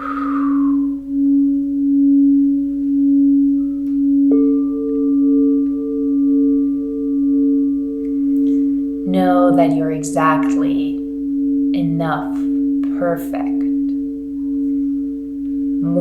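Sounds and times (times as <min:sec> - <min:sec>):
higher singing bowl struck: 0:00.0 - 0:16.0
low singing bowl ringing: 0:00.0 - 0:16.0.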